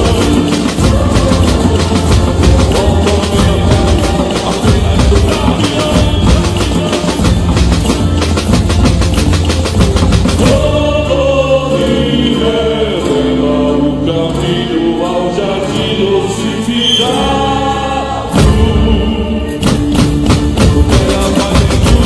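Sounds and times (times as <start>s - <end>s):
drums: 0.0s - 14.7s, 15.7s - 22.0s
group of voices singing: 0.0s - 22.0s.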